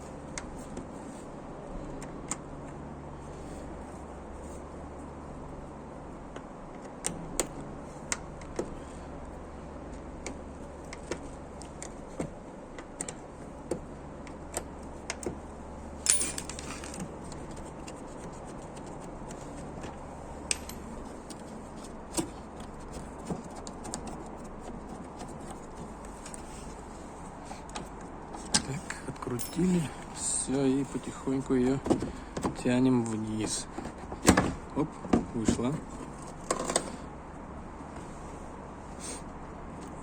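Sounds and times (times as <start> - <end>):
metal clatter: 16.1 - 17.1.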